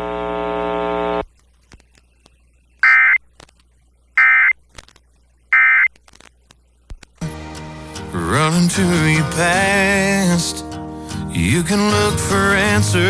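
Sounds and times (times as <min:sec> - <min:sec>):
digital data tone bursts: 0:02.8 - 0:03.2, 0:04.2 - 0:04.6, 0:05.5 - 0:05.9.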